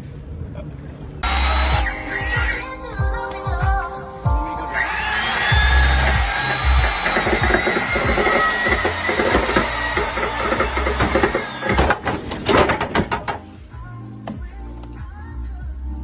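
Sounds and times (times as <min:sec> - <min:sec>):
motor whining: 0:01.2 - 0:02.8, 0:04.6 - 0:12.1
rapid clatter of knocks: 0:06.5 - 0:13.5.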